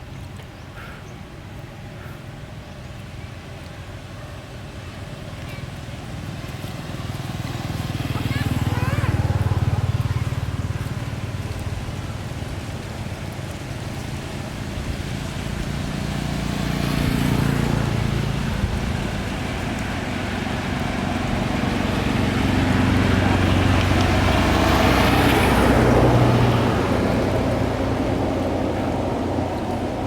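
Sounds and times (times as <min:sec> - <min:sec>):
motor engine humming: 0:00.0 - 0:14.2
vehicles passing: 0:00.0 - 0:30.0.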